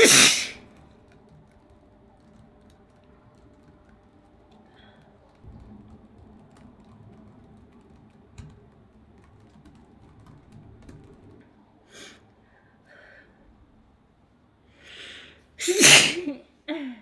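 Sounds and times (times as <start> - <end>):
sharp breaths in: 0.0 - 0.6, 14.8 - 16.2
faint breathing: 4.7 - 5.1, 11.9 - 13.5, 14.7 - 15.8.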